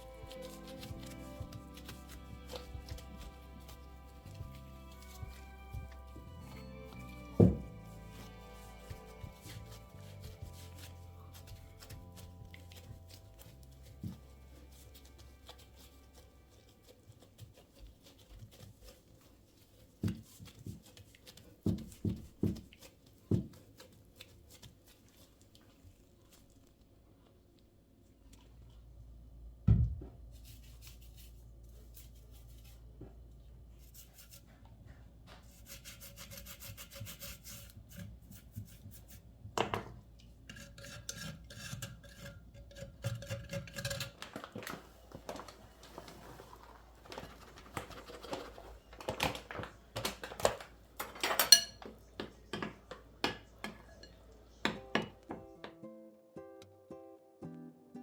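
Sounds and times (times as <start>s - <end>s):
rubbing and scraping: 0.0s - 26.6s, 33.7s - 39.4s, 40.4s - 49.9s.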